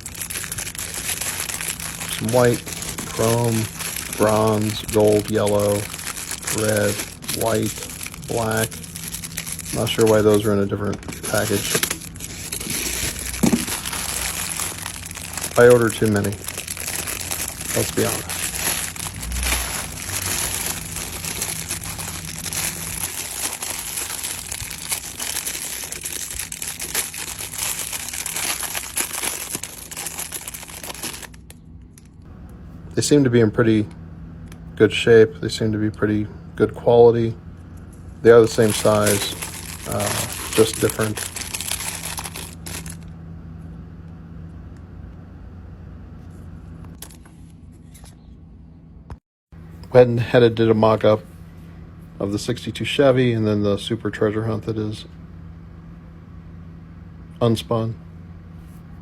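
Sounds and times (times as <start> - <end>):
plastic packaging crinkling: 0.0 - 32.2, 38.4 - 43.1
steady low hum: 0.0 - 59.0.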